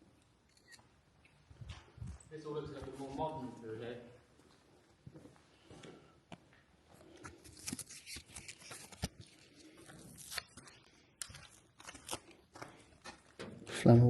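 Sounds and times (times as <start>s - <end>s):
footsteps on gritty floor: 9.9s - 13.5s.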